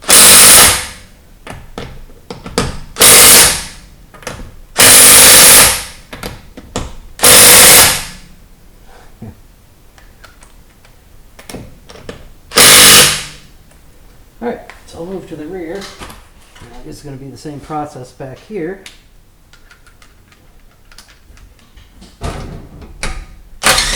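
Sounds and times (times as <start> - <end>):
impact wrench hammering: 0.0 - 8.2, 12.5 - 13.4.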